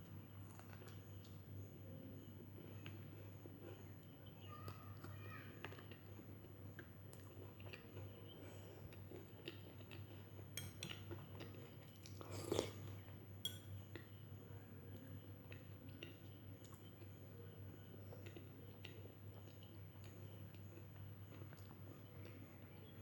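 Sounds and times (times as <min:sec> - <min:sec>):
person chewing: 0:06.8 - 0:13.0.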